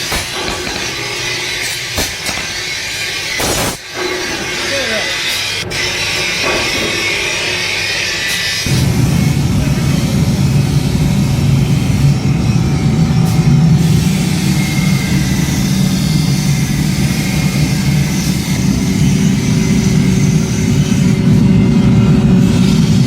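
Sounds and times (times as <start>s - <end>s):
machine low rumble: 8.7s - 23.0s.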